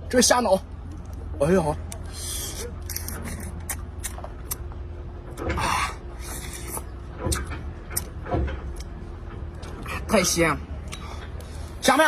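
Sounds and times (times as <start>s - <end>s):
person sucking and chewing prawn: 1.9s - 4.6s, 6.2s - 7.4s.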